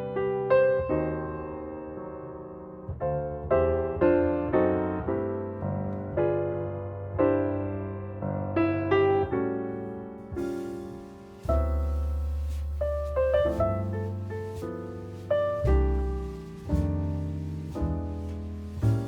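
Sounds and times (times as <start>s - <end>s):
slow piano music: 0.0s - 19.0s
soft hiss: 9.4s - 19.0s.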